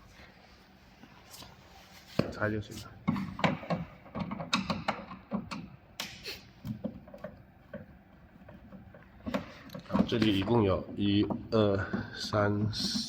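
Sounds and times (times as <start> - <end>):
screwdriver clicks and knocks on plastic: 3.1 - 10.3.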